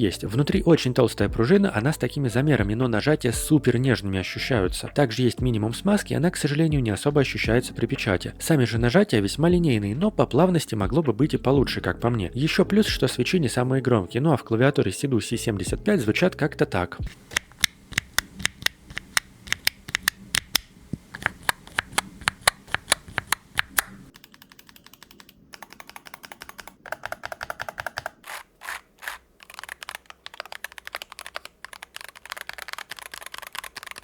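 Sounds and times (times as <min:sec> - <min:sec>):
typing on mechanical keyboard: 0:17.2 - 0:34.0.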